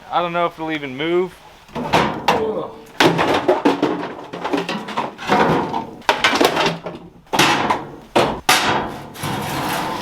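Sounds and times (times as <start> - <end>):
lawn mower scraping and creaking: 8.8 - 10.0.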